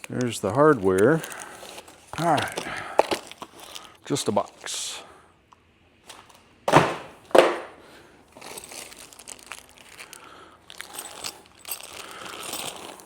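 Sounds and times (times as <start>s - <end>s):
packaging rustling and crinkling: 0.0s - 4.8s, 8.3s - 13.0s
loud thumps: 6.7s - 7.7s.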